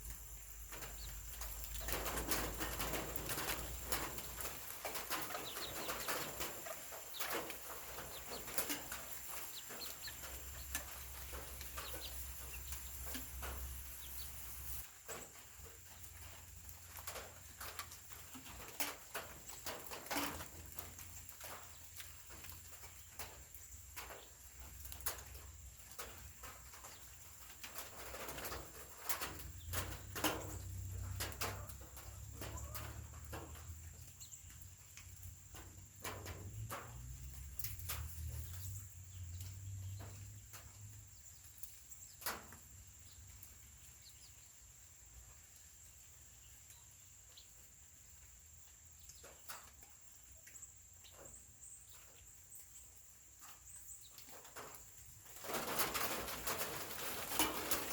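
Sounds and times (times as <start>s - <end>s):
chickens clucking softly: 27.7s - 33.7s.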